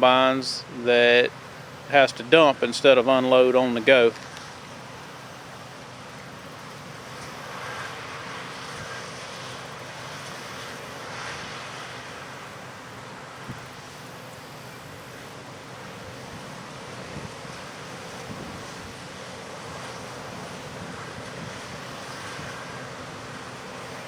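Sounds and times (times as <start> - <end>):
distant combine harvester rushing: 0.0 - 24.0
wind on microphone: 18.2 - 19.0.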